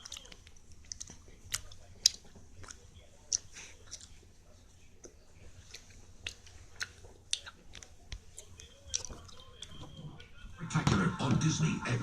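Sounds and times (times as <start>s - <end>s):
chewing bubble gum smacks: 0.0s - 4.3s, 5.0s - 10.3s.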